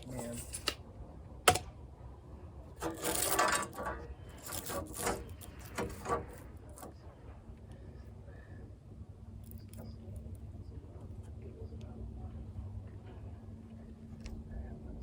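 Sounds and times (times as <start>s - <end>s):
panel scraping and rubbing: 0.0s - 0.8s, 2.8s - 7.0s.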